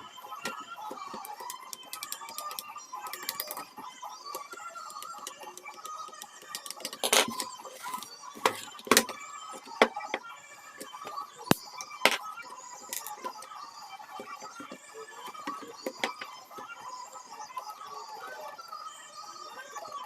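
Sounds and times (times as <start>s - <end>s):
small clicks and taps: 0.4s - 3.7s.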